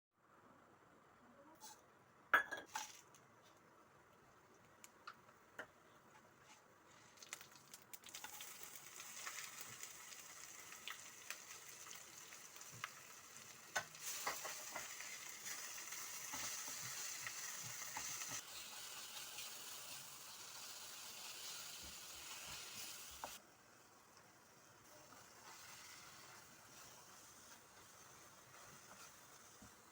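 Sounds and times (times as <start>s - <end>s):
food sizzling in a pan: 6.9s - 29.9s.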